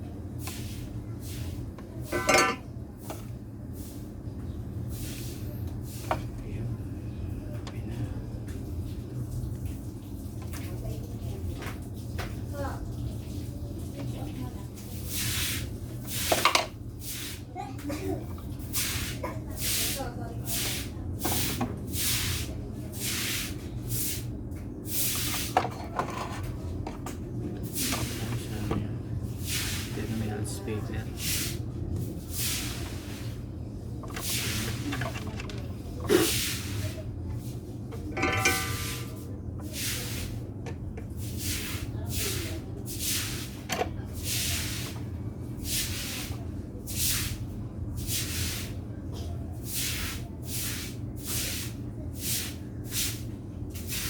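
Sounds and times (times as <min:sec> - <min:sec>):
steady low hum: 0:23.5 - 0:45.6.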